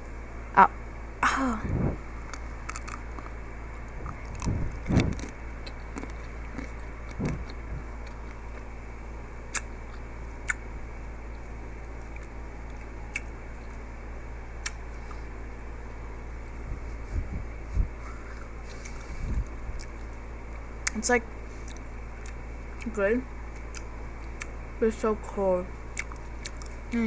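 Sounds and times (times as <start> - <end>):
steady low hum: 0.0 - 27.0
chewing and crunching: 2.2 - 8.7, 11.3 - 13.8, 18.1 - 24.6, 25.9 - 27.0
sharp mouth clicks: 9.5 - 10.6.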